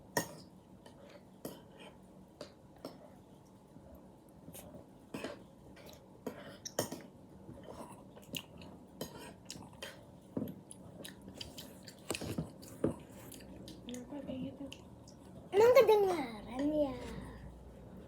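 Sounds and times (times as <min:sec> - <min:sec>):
chewing and biting: 0:07.9 - 0:13.9.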